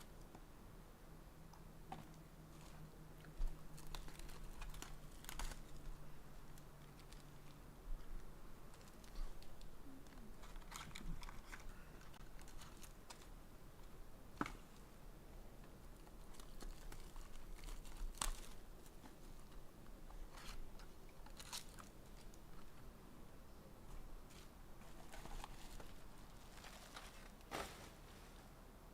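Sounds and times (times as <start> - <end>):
wrapper crinkling and tearing: 3.8 - 6.0, 8.7 - 13.3, 16.0 - 19.0, 21.2 - 22.3.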